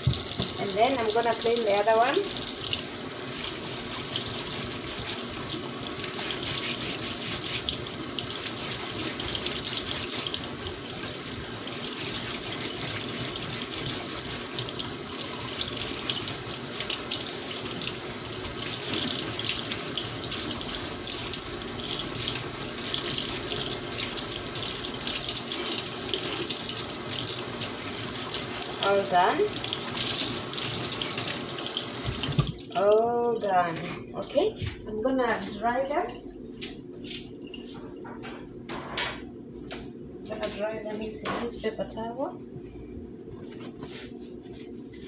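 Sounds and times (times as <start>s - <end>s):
tap running into a sink: 0.0s - 0.8s, 29.6s - 32.7s.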